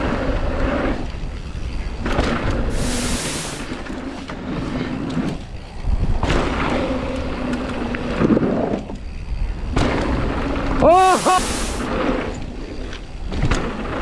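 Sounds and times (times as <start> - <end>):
bike tyres rolling over dirt: 0.0 - 10.8
sharp hiss: 2.7 - 3.8, 10.9 - 11.9.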